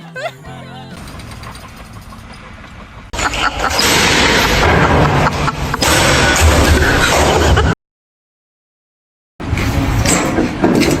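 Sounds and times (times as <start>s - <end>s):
loud deep rumbling noise: 0.9s - 7.1s.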